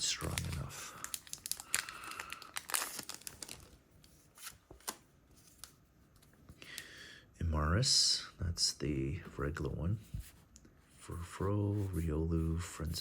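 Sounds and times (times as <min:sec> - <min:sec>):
foil wrapper tearing and crinkling: 0:00.2 - 0:03.8
cards being handled: 0:02.6 - 0:06.4.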